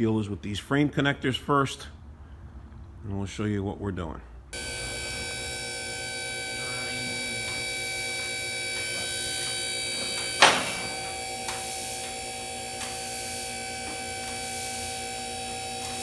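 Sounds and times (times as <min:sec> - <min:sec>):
car lift motor humming: 0:04.6 - 0:16.0
loud metal clank: 0:10.2 - 0:11.2.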